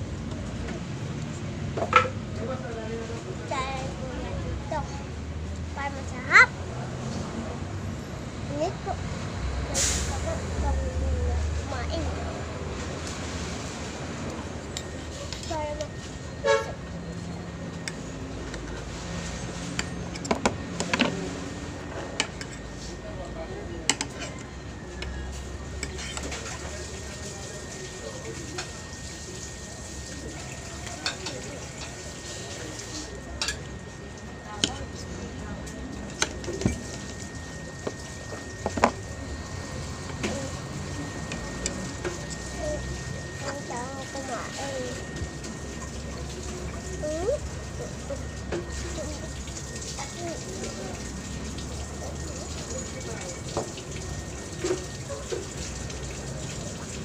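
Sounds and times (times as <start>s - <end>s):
steady background hum: 0.0s - 57.0s
utensils clinking on plate: 25.8s - 26.7s, 33.4s - 33.7s.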